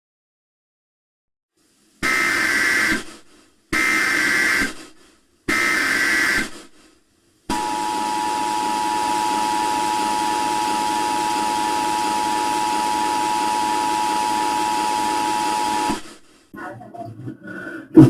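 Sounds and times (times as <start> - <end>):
static hiss: 1.6 - 7.1
two-tone alarm: 7.5 - 15.9.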